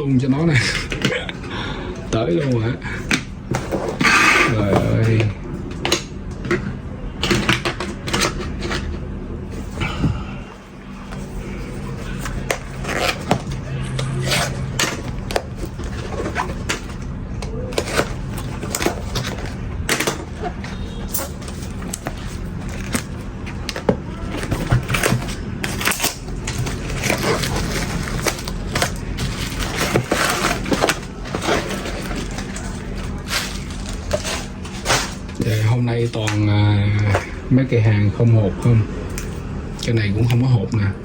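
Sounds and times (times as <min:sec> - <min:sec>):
steady low hum: 0:00.0 - 0:41.0
packaging rustling: 0:10.8 - 0:36.4.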